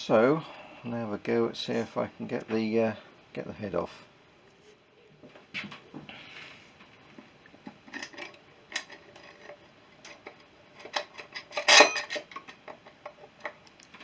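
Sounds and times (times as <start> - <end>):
metallic clinks and knocks: 7.9 - 13.6.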